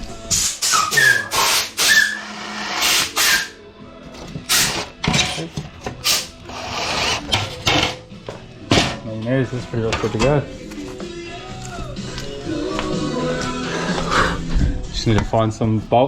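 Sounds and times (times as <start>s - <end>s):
brief squeaks: 0.6s - 2.2s.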